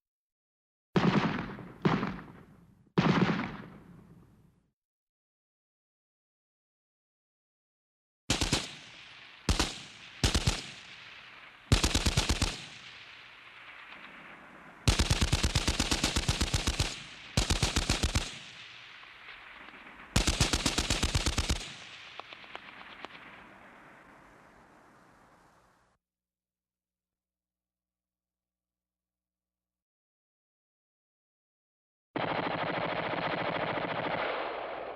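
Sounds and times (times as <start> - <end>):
gunfire echo: 1.0 - 4.5, 8.3 - 25.5, 32.2 - 34.9
machine gun bursts: 9.5 - 10.6, 11.7 - 12.6, 14.9 - 18.4, 20.2 - 23.2.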